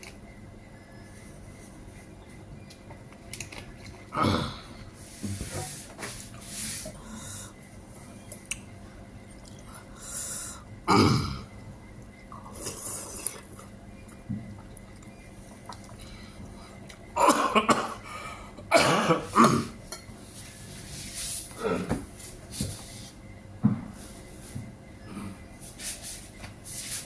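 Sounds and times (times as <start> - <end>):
person coughing: 10.9 - 11.4, 17.2 - 18.0, 18.7 - 19.8.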